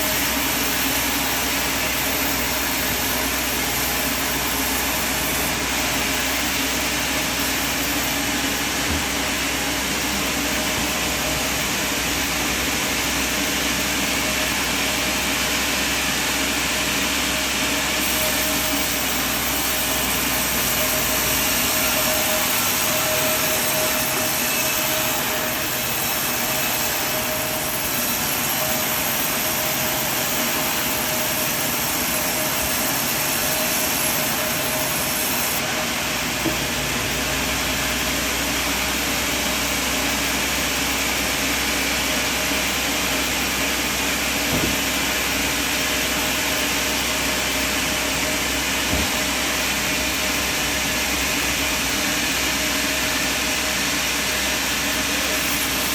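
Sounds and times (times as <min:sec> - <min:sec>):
sawmill machine rush: 0:00.0 - 0:55.9.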